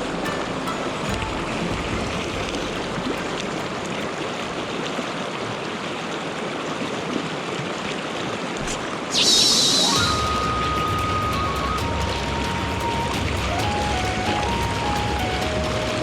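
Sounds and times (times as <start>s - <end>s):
stream rushing over rocks: 0.0s - 16.0s
loud high warbling: 8.6s - 15.8s.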